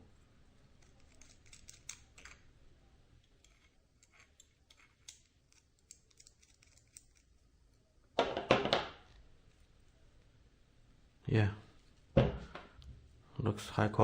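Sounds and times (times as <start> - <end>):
small parts clicking and tapping: 0.7 - 2.5, 3.2 - 7.4.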